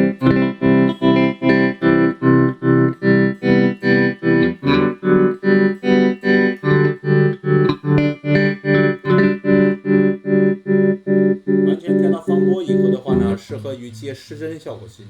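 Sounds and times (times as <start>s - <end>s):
electric guitar chords with tremolo: 0.0s - 13.4s.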